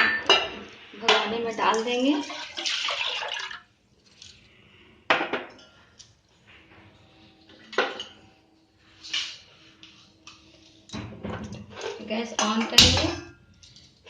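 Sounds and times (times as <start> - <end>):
cooking pot and utensils clanking: 0.0 - 3.5, 5.1 - 6.0, 7.5 - 8.4, 10.8 - 14.0.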